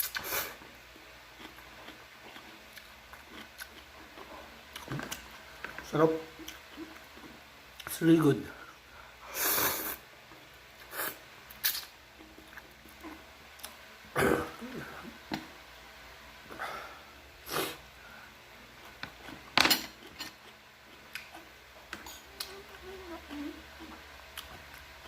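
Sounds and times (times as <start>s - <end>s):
person eating noodles: 10.8s - 15.2s.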